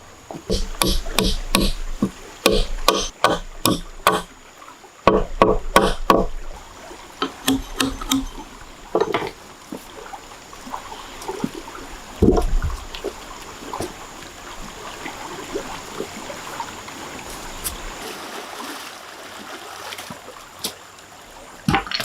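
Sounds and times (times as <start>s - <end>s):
hard knocks on wood: 0.5s - 4.3s, 5.1s - 6.5s, 12.2s - 12.6s.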